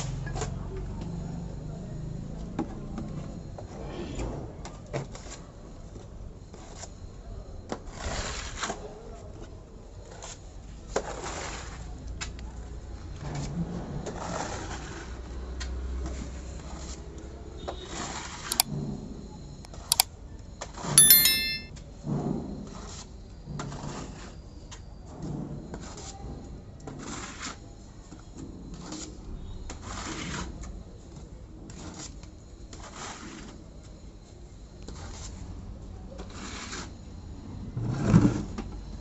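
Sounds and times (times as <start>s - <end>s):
brief metallic ring: 21.0s - 21.7s
sharp clicks: 21.0s - 21.7s.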